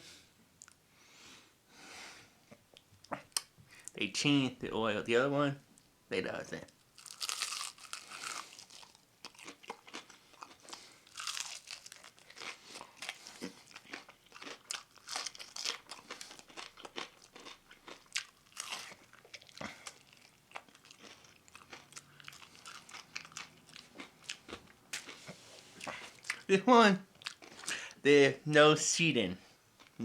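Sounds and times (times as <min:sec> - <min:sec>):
person chewing crispy fried chicken: 0:07.0 - 0:26.5, 0:27.2 - 0:27.9.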